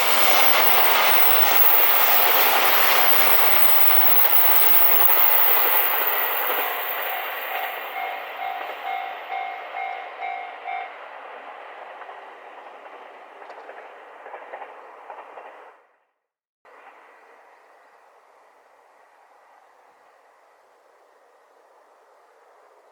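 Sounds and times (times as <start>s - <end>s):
crossing warning bell ringing: 0.0s - 11.1s
wheels clacking over rail joints: 0.0s - 15.9s
diesel train passing: 0.0s - 16.0s, 16.7s - 22.9s.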